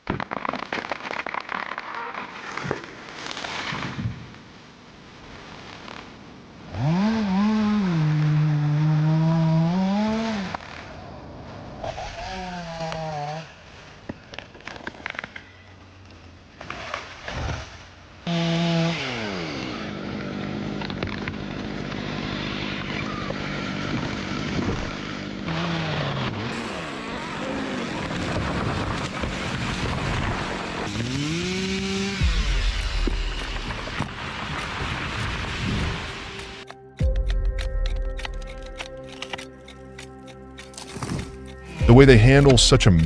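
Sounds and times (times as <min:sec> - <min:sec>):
chainsaw revving: 0:06.7 - 0:11.0, 0:11.7 - 0:14.0, 0:17.3 - 0:36.7, 0:38.4 - 0:42.6
knocks and clicks: 0:32.2 - 0:43.0.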